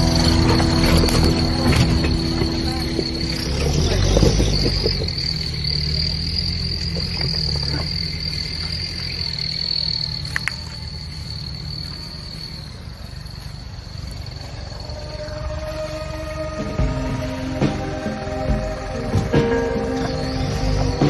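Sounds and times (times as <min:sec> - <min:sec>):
low rumble: 0:00.0 - 0:05.5
insects droning: 0:00.0 - 0:21.0.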